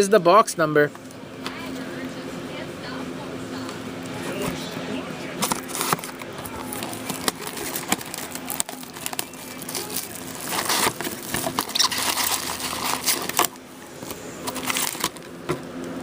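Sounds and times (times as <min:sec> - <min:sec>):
plastic wrapping crinkling and tearing: 0:05.4 - 0:15.2.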